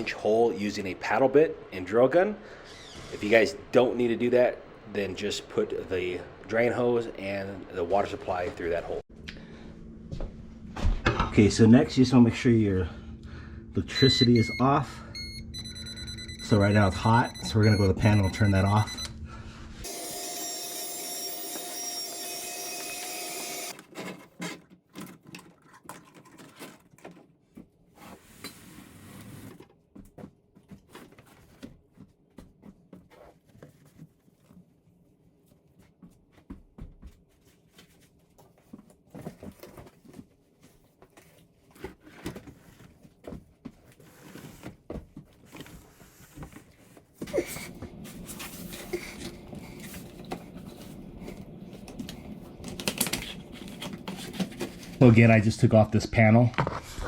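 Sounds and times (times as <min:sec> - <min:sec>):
held tone: 0:13.8 - 0:19.2.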